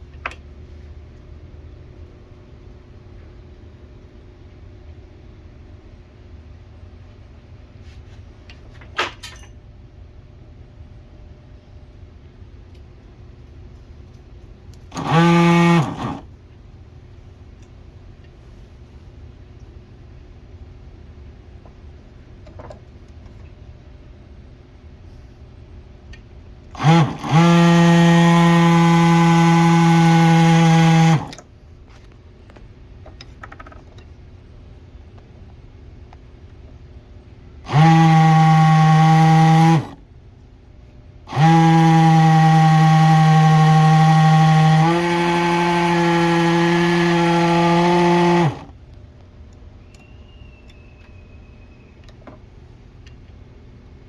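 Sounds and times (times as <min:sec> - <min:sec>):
pump motor buzzing hum: 0:14.8 - 0:16.3, 0:26.7 - 0:31.5, 0:37.6 - 0:40.1, 0:41.2 - 0:48.9
pump hum rising in pitch: 0:26.7 - 0:31.4.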